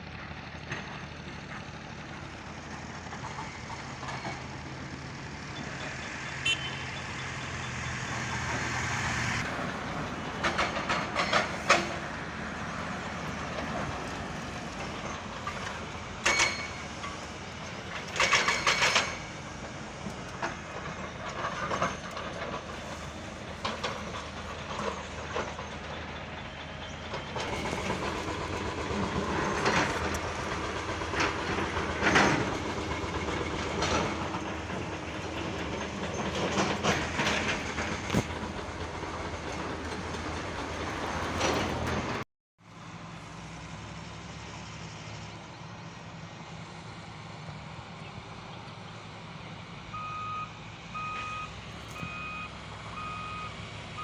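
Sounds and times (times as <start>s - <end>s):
construction machinery engines running: 0.0s - 54.0s
metal clanks and knocks: 9.4s - 26.2s, 26.8s - 42.2s
vehicle reversing beeps: 49.9s - 54.0s.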